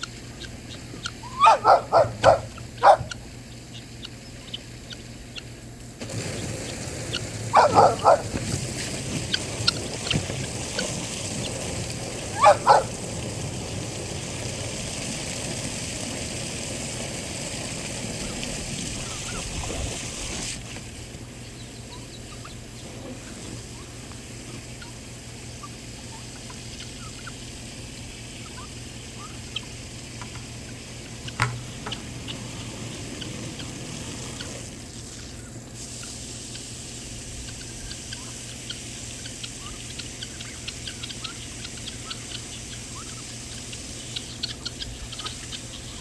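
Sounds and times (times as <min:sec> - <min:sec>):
poultry chirping: 0:00.0 - 0:14.1, 0:17.0 - 0:20.4, 0:21.2 - 0:29.8, 0:30.4 - 0:36.7, 0:37.4 - 0:46.0
steady low hum: 0:00.0 - 0:14.8.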